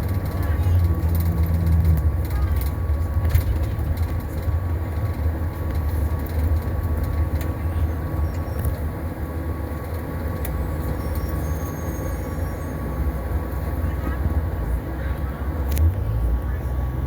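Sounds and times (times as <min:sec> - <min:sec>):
bus engine rumble: 0:00.0 - 0:17.0.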